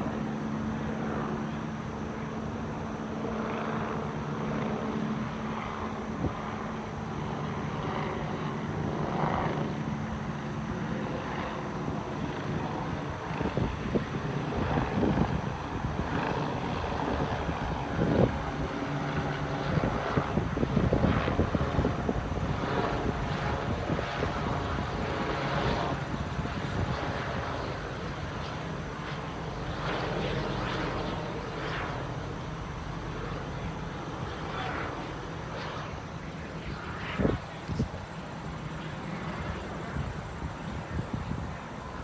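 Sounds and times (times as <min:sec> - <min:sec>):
helicopter rotor and turbine drone: 0:00.0 - 0:42.0
wind buffeting microphone: 0:11.3 - 0:42.0.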